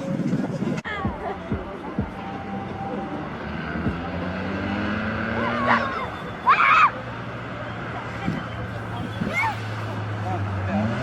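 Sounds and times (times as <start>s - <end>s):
car engine running: 1.1s - 6.4s.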